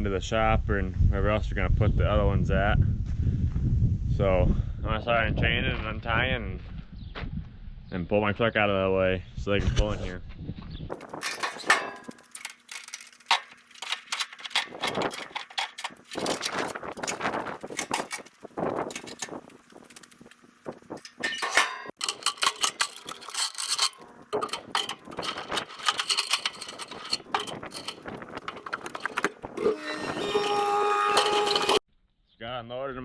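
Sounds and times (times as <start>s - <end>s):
steel chains clanking and rattling: 10.9s - 20.2s, 20.8s - 31.8s.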